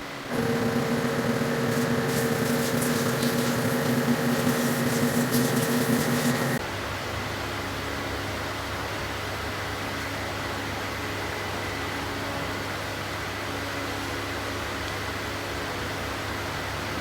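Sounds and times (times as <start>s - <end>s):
mechanical fan hum: 0.2s - 6.6s.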